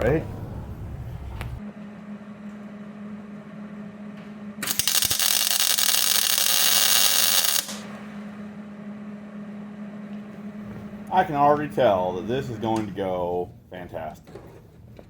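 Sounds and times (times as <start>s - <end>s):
steady low hum: 0.0s - 15.0s
welding arc crackling and hissing: 4.6s - 7.8s.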